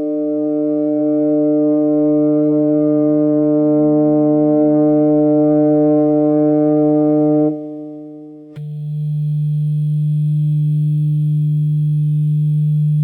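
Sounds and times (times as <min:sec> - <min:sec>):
instrument washer humming: 0:08.6 - 0:13.0.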